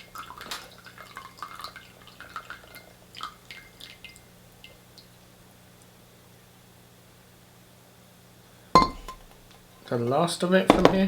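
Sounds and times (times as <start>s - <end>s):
tea trickling into a cup: 0.0s - 4.8s.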